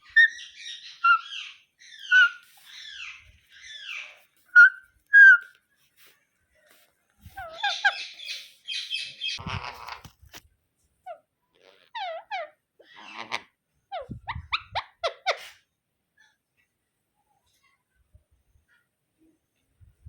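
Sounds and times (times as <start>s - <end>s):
parrot calling: 0.0s - 5.5s, 7.4s - 10.0s, 11.0s - 15.6s
parrot chattering rapidly: 7.4s - 8.4s, 11.6s - 15.6s.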